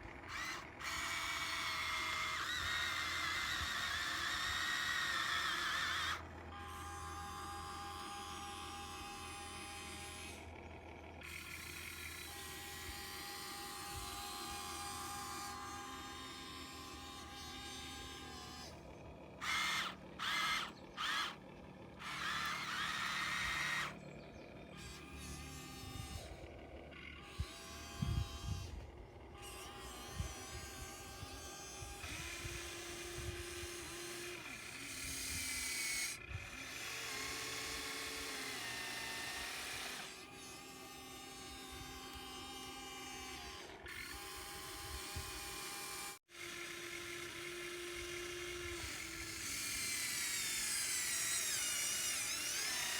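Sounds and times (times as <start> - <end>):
small electric motors whining: 0.0 - 52.9.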